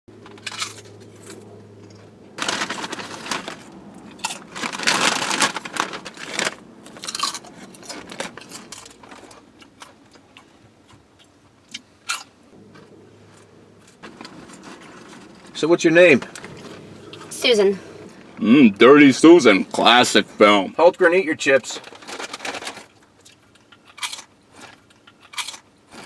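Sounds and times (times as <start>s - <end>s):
chip bag crinkling: 0.3s - 10.2s, 19.4s - 26.0s.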